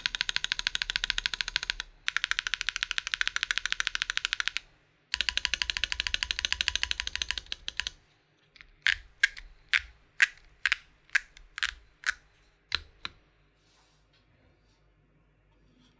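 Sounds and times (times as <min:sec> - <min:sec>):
keyboard typing: 0:00.0 - 0:08.0, 0:08.6 - 0:13.2.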